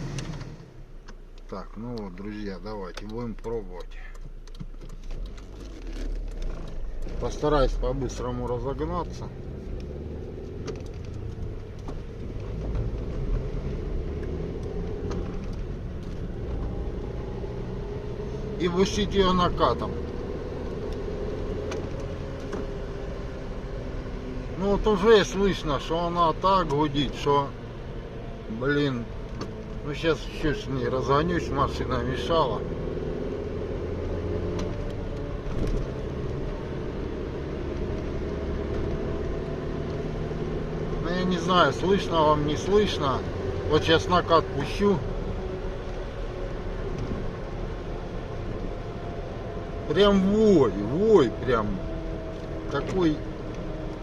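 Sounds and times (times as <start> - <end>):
car engine accelerating: 0.0 - 54.0
tyres droning on asphalt: 0.0 - 54.0
light ticks: 1.0 - 5.4.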